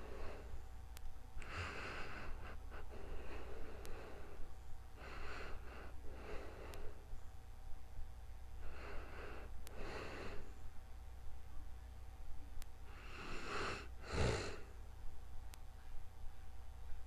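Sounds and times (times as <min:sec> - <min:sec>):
heavy noisy breathing: 0:00.0 - 0:00.7, 0:01.4 - 0:07.2, 0:08.6 - 0:10.7, 0:12.8 - 0:14.8
steady low hum: 0:00.0 - 0:17.0.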